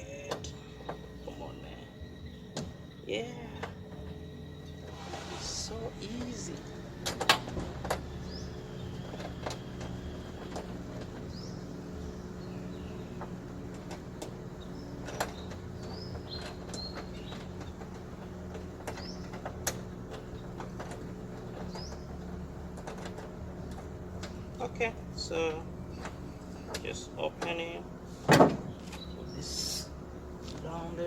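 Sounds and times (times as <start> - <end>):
steady low hum: 0.0 - 31.0
hand tools clicking and tapping: 6.1 - 24.8.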